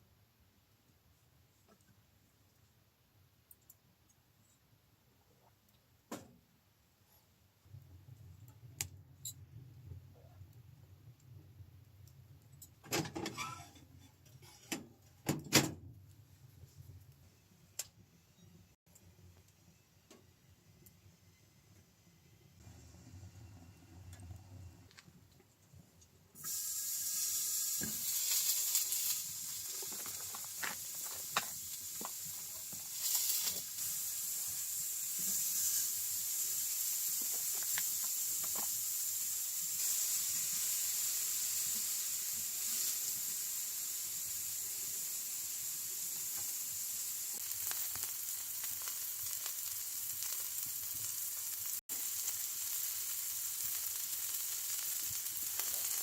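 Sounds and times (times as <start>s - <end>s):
food sizzling in a hot pan: 26.4s - 56.0s.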